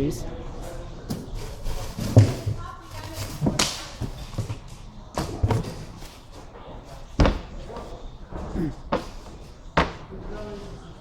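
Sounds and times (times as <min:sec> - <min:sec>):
cabinet panels knocking and thudding: 0:01.1 - 0:10.7.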